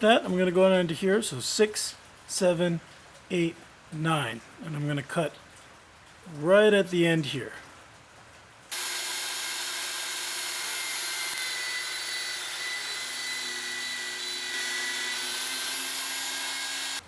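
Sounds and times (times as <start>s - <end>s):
power tool cutting steel: 8.7s - 17.0s.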